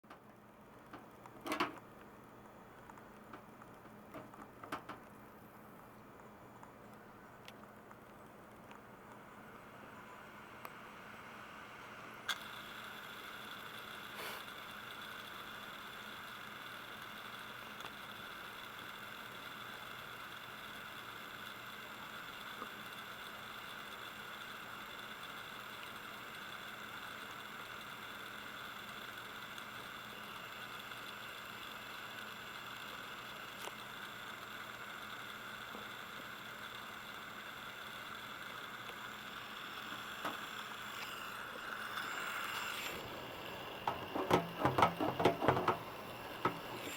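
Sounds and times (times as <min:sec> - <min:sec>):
hard drive clicks and knocks: 0:00.0 - 0:09.3, 0:39.8 - 0:41.2, 0:42.6 - 0:46.9
hard drive spinning whine: 0:00.4 - 0:46.9.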